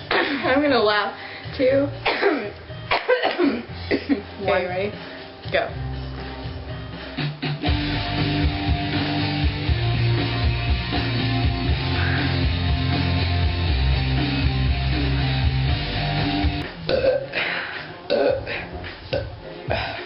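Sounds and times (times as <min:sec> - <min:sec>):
rock music with guitar and bass: 0:01.7 - 0:17.3.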